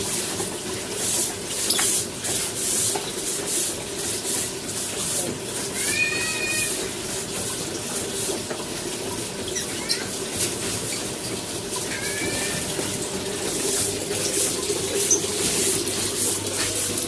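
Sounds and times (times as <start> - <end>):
brush scrubbing with water: 0.0 - 17.0
high-pitched animal call: 5.8 - 6.8, 11.8 - 12.7.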